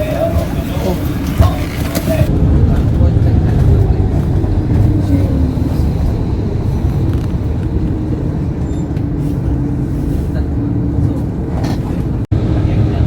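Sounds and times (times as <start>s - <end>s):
coach engine and road rumble: 0.0s - 13.0s
faint whine: 2.1s - 11.5s.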